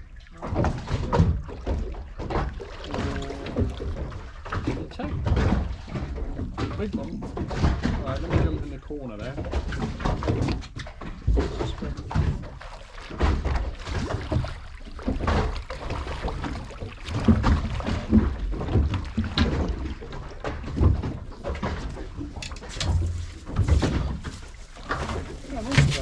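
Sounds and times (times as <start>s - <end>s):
knocks on boat deck: 20.5s - 26.0s.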